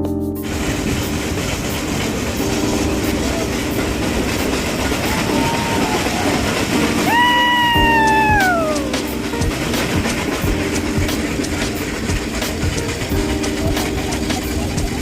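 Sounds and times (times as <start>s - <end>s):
train rumbling: 0.0s - 15.0s
train whistle: 2.8s - 9.2s.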